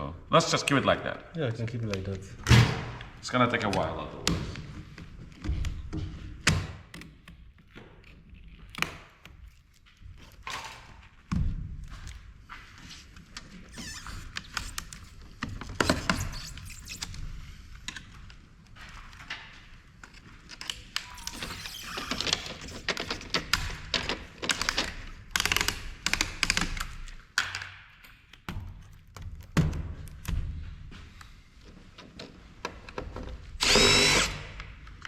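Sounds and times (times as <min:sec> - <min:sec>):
hand tools and parts clicking: 0:33.6 - 0:34.7.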